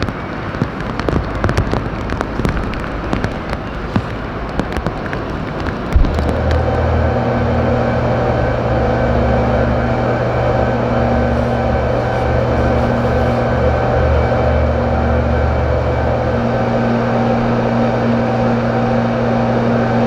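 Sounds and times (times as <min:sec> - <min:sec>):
raindrop ticks: 0:00.0 - 0:07.9
engine hum: 0:00.0 - 0:20.0.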